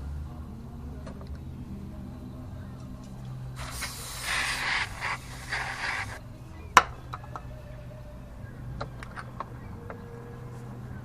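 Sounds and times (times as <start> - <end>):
low steady hum: 0.0 - 11.0
hissing spray: 3.6 - 6.2.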